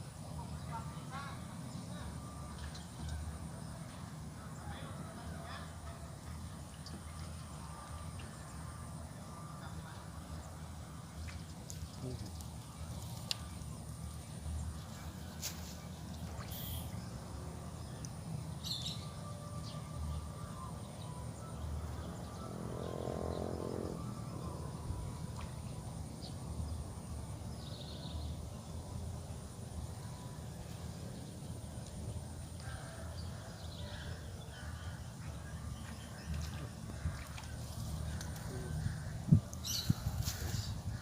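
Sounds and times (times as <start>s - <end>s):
thin high-pitched drone: 16.4s - 17.0s
bird chirps: 16.5s - 17.0s.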